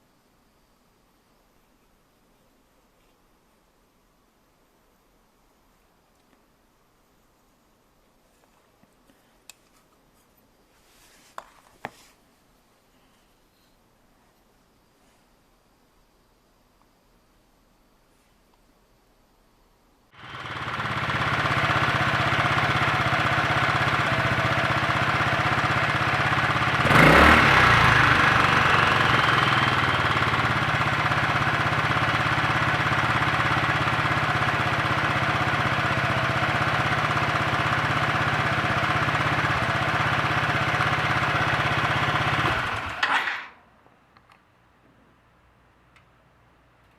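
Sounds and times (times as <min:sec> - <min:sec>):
scooter engine idling: 0:20.2 - 0:43.2.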